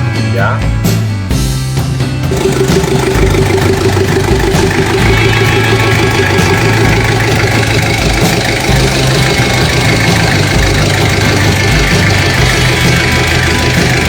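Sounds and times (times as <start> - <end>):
diesel engine idling: 2.2 - 14.0.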